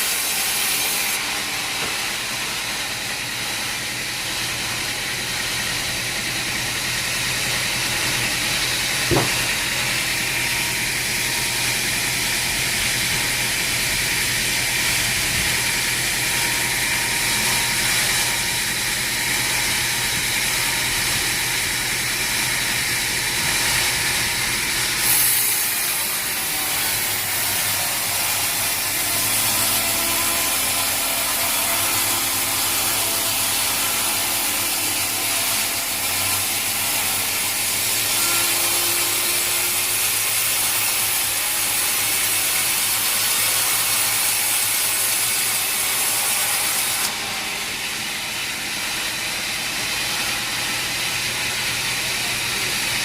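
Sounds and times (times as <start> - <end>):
sawmill saw cutting log: 0.0 - 53.0
sharp knock: 9.0 - 9.6.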